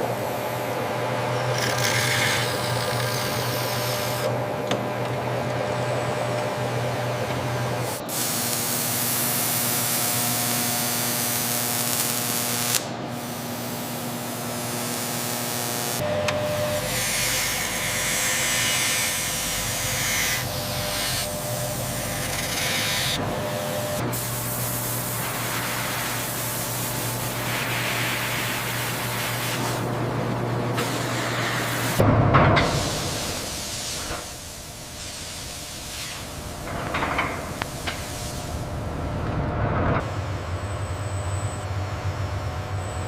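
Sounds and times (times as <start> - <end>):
hissing machine noise: 0.0 - 43.0
low hum: 36.3 - 43.0.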